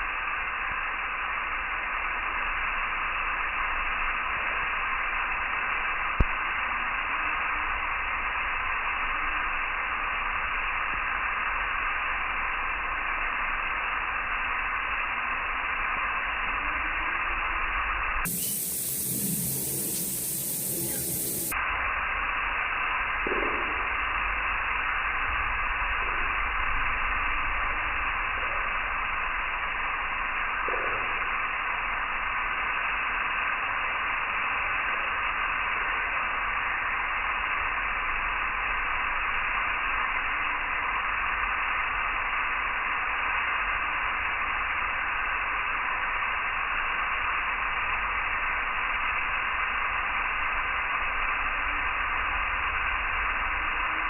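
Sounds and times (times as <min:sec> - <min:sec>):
static-like hiss: 0:00.0 - 0:54.0
low rumble: 0:18.3 - 0:21.6.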